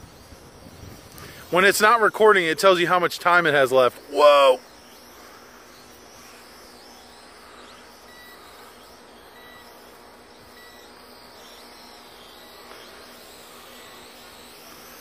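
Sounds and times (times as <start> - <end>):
drone propellers buzzing: 0.0 - 15.0
faint short beeps: 3.9 - 15.0.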